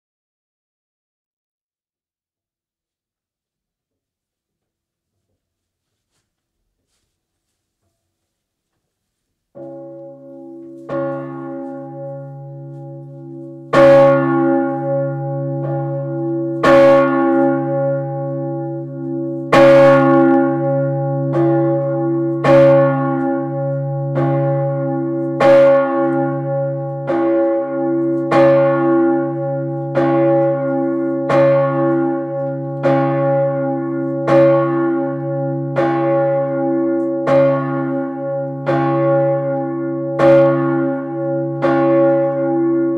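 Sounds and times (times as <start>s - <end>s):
church bell ringing: 9.5s - 42.9s
deep bell hum: 9.6s - 42.9s.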